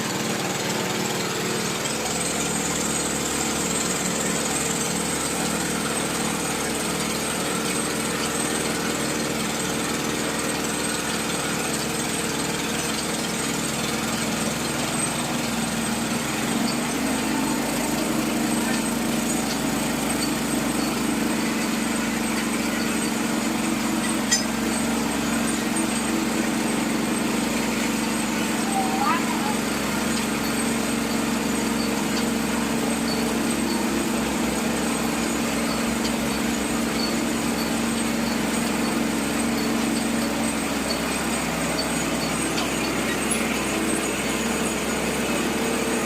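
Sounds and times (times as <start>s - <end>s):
small engine running: 0.0s - 46.0s.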